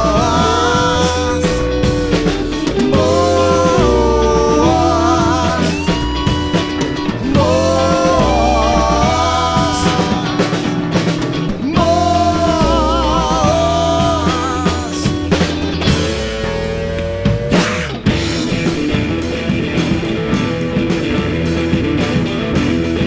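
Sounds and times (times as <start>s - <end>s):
bass guitar: 0.0s - 23.0s
drum kit: 0.0s - 23.0s
guitar melody with bent notes: 0.0s - 23.0s.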